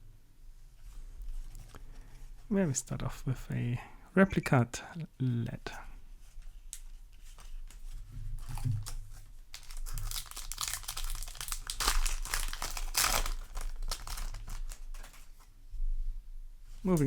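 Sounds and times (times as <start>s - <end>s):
foil wrapper crinkling and tearing: 7.3s - 15.5s.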